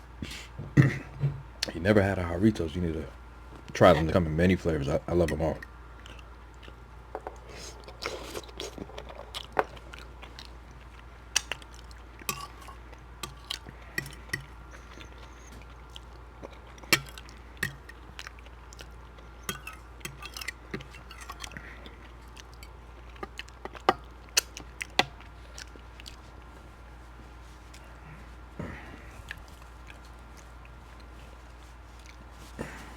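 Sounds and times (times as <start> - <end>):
steady low hum: 0.0 - 32.9
person chewing food: 5.4 - 32.9.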